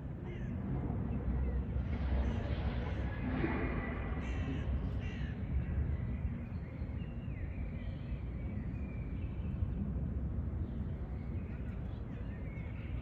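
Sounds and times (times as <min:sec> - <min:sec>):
birds calling: 0:00.0 - 0:07.9
steady low rumble: 0:00.0 - 0:13.0.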